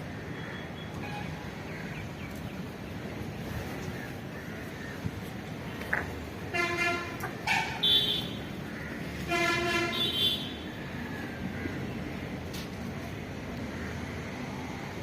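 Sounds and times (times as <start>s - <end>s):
steady background noise: 0.0s - 15.0s
vehicle horn toots: 6.5s - 8.4s, 9.3s - 10.6s.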